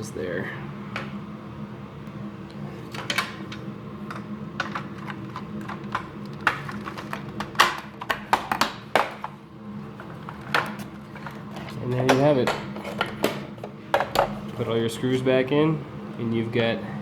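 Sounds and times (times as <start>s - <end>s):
plastic parts clicking: 4.6s - 9.2s.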